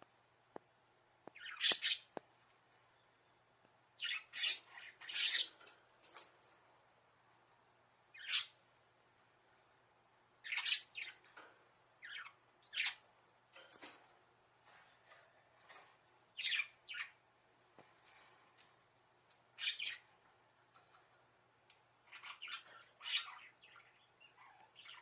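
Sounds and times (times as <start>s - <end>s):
budgerigars chirping and squawking: 1.3s - 2.1s, 4.0s - 5.7s, 8.1s - 8.6s, 10.4s - 13.1s, 15.6s - 17.2s, 19.5s - 21.1s, 22.0s - 25.0s.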